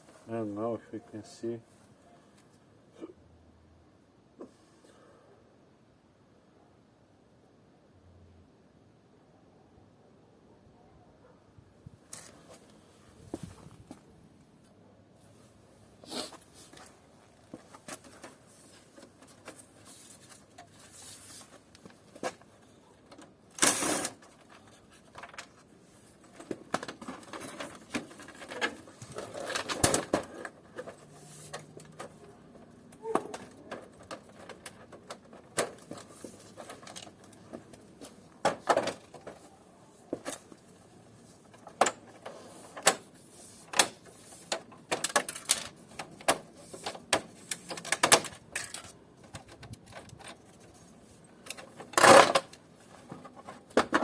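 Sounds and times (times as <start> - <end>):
plastic and metal parts clicking: 43.7 - 54.0.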